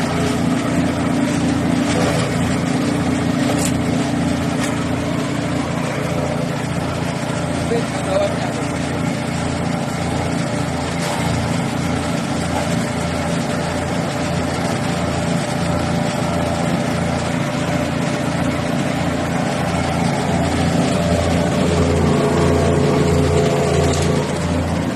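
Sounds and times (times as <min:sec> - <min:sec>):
wood chipper engine running: 0:00.0 - 0:24.9.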